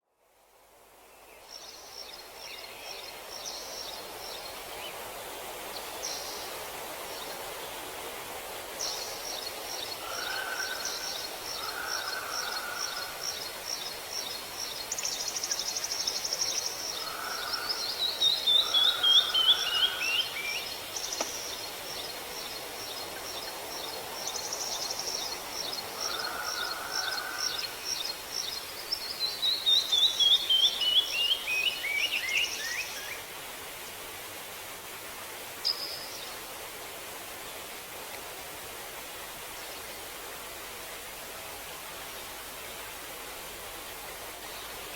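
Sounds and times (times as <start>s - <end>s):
steady background hiss: 0.1s - 44.9s
songbirds singing: 8.8s - 33.2s.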